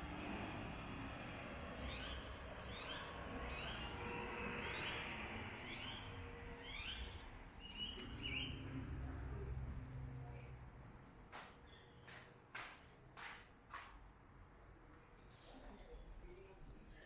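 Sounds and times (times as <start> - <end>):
low rumble of traffic: 0.0 - 17.0
bird chirping: 6.6 - 8.7.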